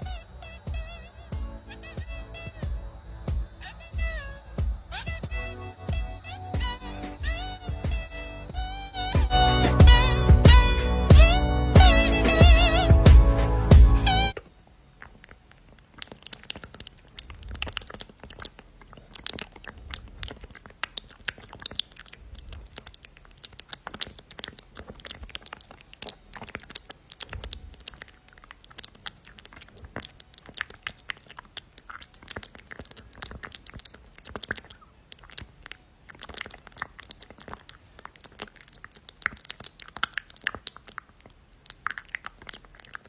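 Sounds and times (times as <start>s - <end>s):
crunching clicks and crackles: 0.0s - 10.0s, 14.3s - 43.0s
soft low thumps: 0.0s - 14.4s.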